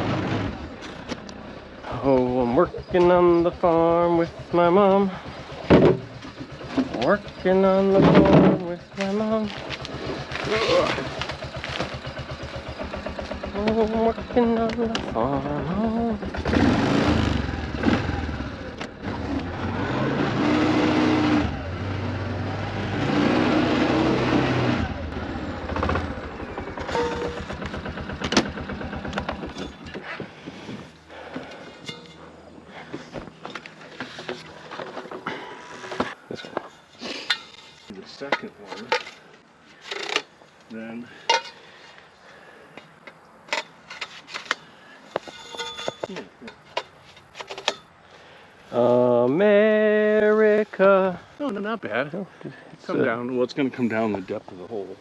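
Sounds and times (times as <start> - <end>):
engine revving up and down: 0.0 - 0.8, 15.2 - 29.6
metal parts clinking and clanking: 31.5 - 32.4, 35.9 - 40.3, 41.2 - 41.6, 43.0 - 47.9.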